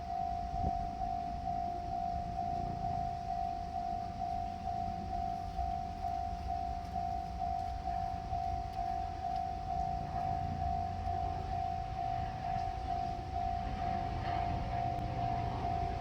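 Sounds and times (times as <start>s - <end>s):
level crossing alarm bell: 0.0s - 16.0s
low rumble: 0.1s - 16.0s.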